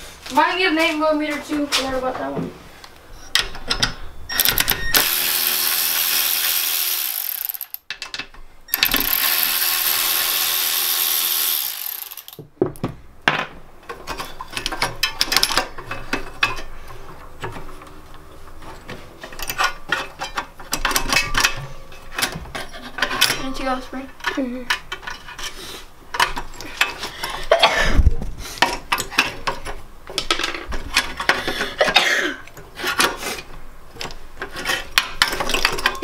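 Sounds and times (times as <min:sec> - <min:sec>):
electric ratchet running: 0:04.4 - 0:07.8, 0:08.7 - 0:12.4
metal tools clanking: 0:19.2 - 0:27.8, 0:34.0 - 0:36.0.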